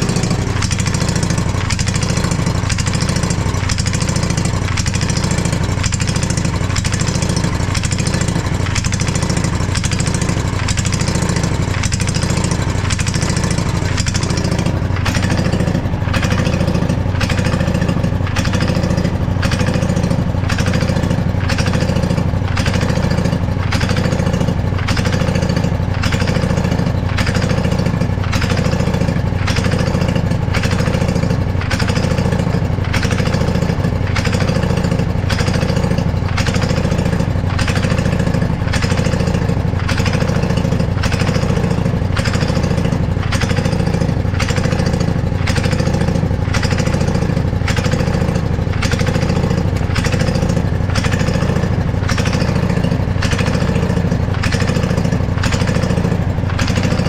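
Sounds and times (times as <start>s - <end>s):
riding mower engine surging: 0.0s - 57.0s.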